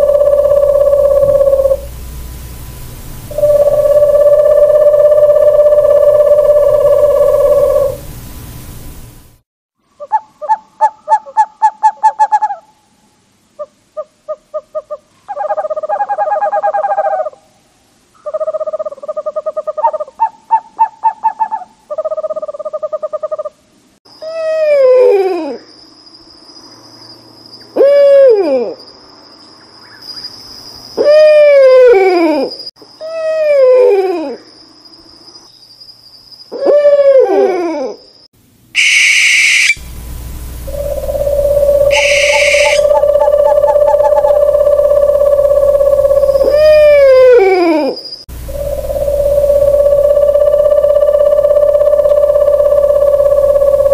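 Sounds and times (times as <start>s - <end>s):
owl hooting and wailing: 0.0s - 2.0s, 3.3s - 8.1s, 14.0s - 17.5s, 18.2s - 23.5s, 24.2s - 25.7s, 27.7s - 28.8s, 31.0s - 34.5s, 36.5s - 38.0s, 38.8s - 39.8s, 40.7s - 53.9s
harsh hissy owl call: 0.0s - 9.1s, 13.6s - 17.5s, 24.2s - 25.8s, 27.0s - 28.9s, 31.0s - 34.5s, 36.4s - 38.0s, 38.8s - 53.9s
steady high-pitched tone: 0.0s - 9.4s, 38.8s - 47.4s, 48.3s - 53.9s.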